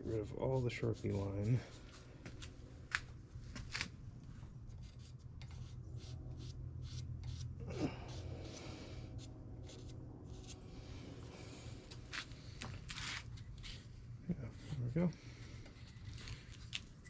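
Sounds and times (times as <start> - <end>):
marker scratching on metal tubing: 0.0 - 2.1, 4.7 - 10.6
steady low hum: 0.0 - 17.0.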